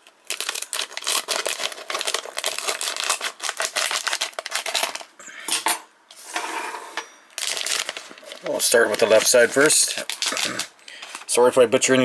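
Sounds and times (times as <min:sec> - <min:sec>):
plastic wrapping crinkling: 0:00.0 - 0:05.1, 0:07.3 - 0:11.6.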